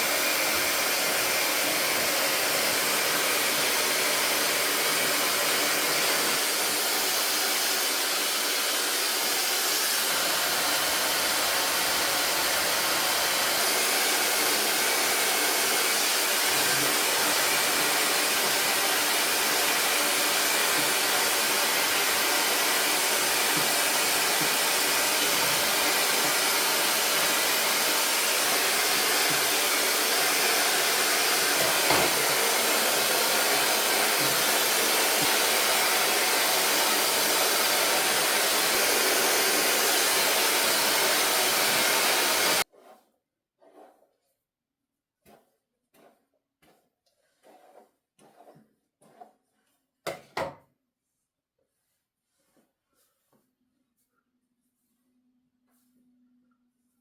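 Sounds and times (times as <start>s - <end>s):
hair dryer blowing air: 0.0s - 42.7s.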